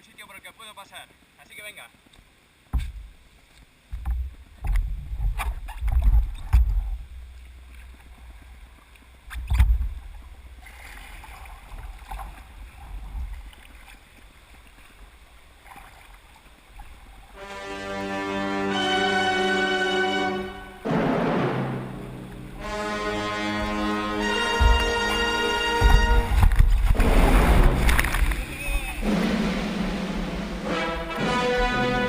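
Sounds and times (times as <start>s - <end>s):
water splashing: 4.2s - 32.0s
heavy low thumps: 20.5s - 32.0s
paddle strokes: 21.8s - 31.7s.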